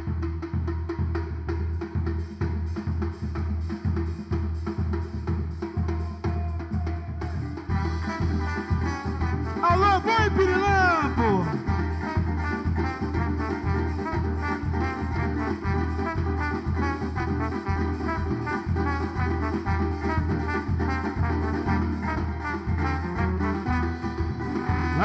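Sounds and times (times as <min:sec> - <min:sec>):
deep drum beat: 0:00.0 - 0:25.0
brass melody: 0:07.2 - 0:25.0.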